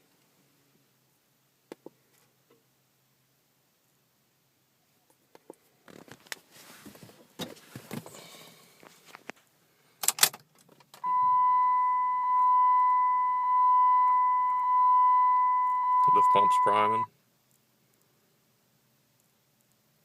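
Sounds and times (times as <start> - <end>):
high electronic warning tone: 11.0 - 17.1.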